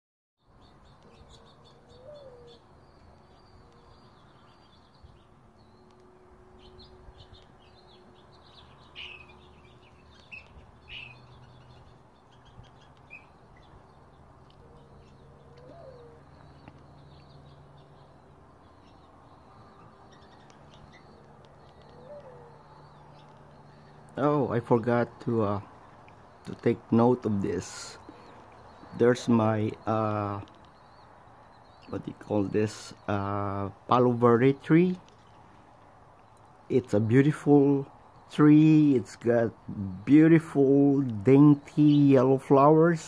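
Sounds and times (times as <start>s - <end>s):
birds chirping: 0.4s - 43.0s.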